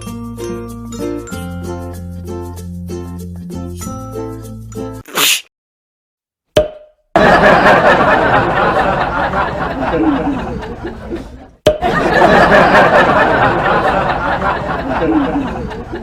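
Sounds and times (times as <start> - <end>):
people laughing: 7.2 - 16.0.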